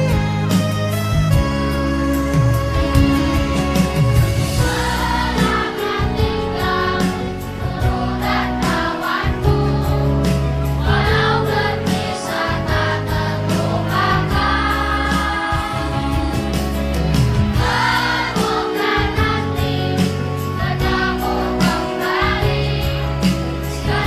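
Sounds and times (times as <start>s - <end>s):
instrumental accompaniment: 0.0s - 24.0s
children's choir singing: 4.6s - 16.6s, 17.5s - 24.0s.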